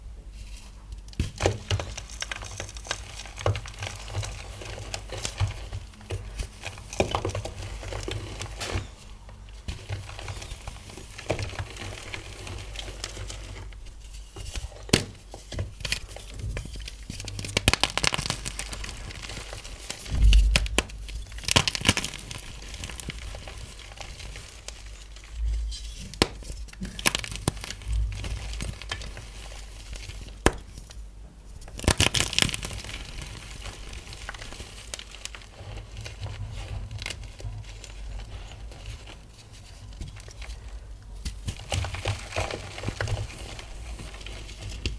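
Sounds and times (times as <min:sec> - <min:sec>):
chalk crunching and crackling: 0:10.0 - 0:31.0, 0:31.6 - 0:40.7
low thump: 0:20.1 - 0:21.4.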